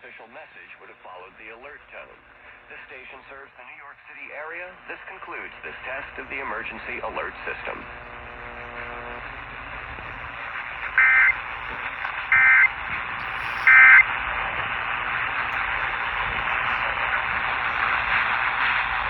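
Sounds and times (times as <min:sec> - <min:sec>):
radio static hiss: 0:00.0 - 0:19.0
digital tone squawks: 0:11.0 - 0:11.4, 0:12.3 - 0:12.7, 0:13.4 - 0:14.0.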